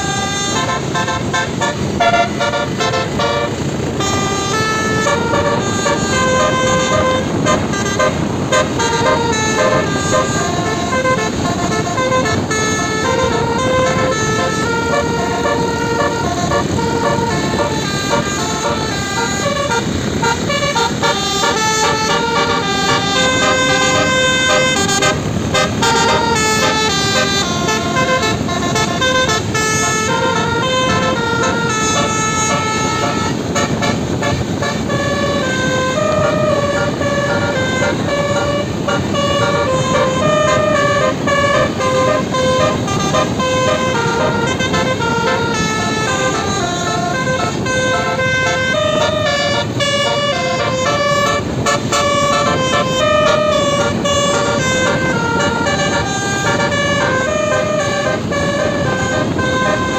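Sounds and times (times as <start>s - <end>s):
multi-tone bus horn melody: 0.0s - 59.9s.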